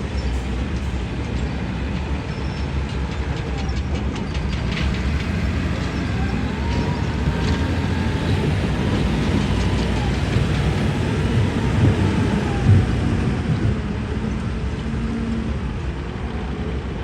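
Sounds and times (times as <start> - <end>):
excavator diesel engine rumble: 0.0 - 17.0.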